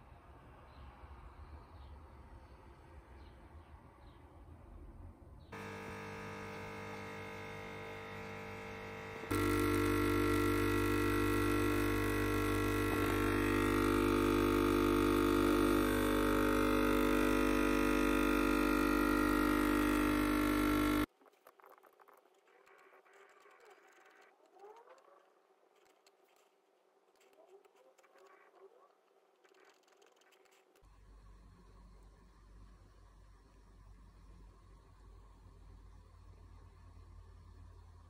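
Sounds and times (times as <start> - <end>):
electric motor hum: 5.6 - 21.1.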